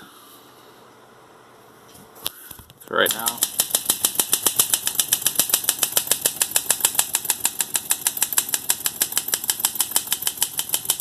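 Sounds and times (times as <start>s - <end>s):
typewriter keystrokes clicking: 3.1s - 11.0s.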